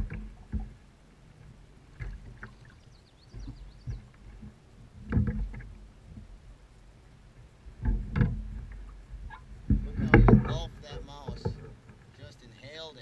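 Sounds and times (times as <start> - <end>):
thumps against a kayak hull: 0.0 - 0.8, 3.3 - 6.3, 7.8 - 12.1.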